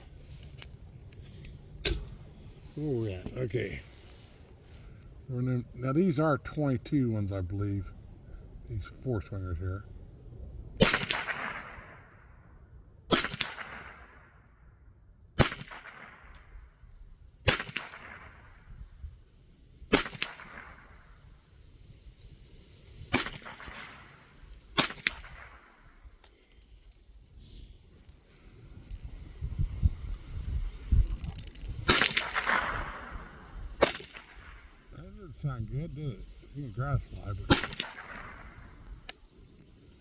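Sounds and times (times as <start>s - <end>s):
rifle shots with echo: 10.8s - 12.4s, 13.1s - 14.3s, 15.4s - 16.6s, 17.4s - 18.7s, 19.9s - 21.2s, 23.1s - 26.2s, 31.8s - 34.9s, 37.4s - 39.2s.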